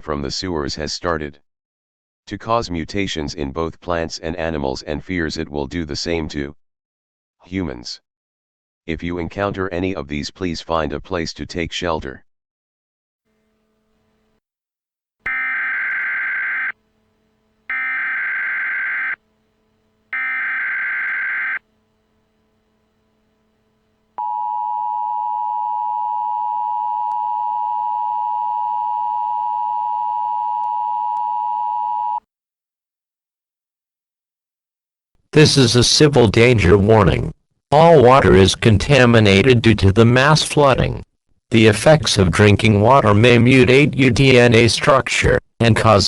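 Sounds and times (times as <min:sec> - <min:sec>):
data burst tones: 0:15.3 - 0:16.8, 0:17.7 - 0:19.2, 0:20.2 - 0:21.6
two-tone attention signal: 0:15.3 - 0:16.8, 0:17.7 - 0:19.2, 0:20.2 - 0:21.6.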